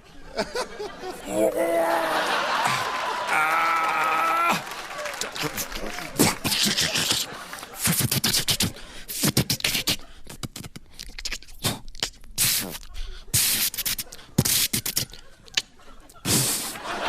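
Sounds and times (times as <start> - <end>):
mouth clicks and snaps: 5.2 - 16.8
man making mouth sound effects: 5.5 - 16.8
short hissing bursts: 12.4 - 15.1.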